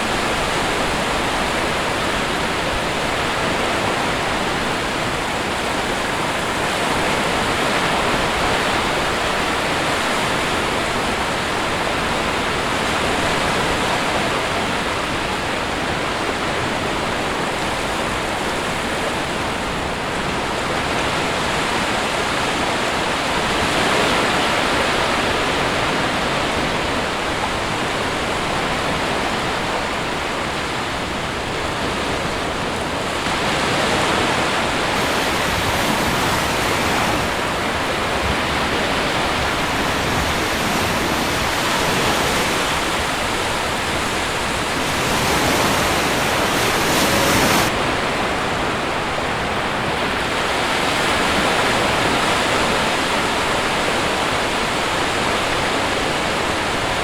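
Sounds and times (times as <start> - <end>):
ocean waves breaking: 21.1 - 52.9.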